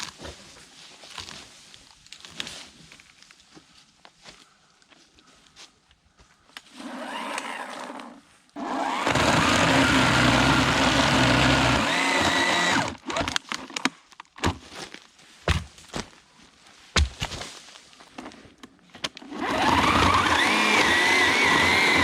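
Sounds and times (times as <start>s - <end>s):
electric chainsaw cutting wood: 6.7s - 13.4s, 19.2s - 22.0s.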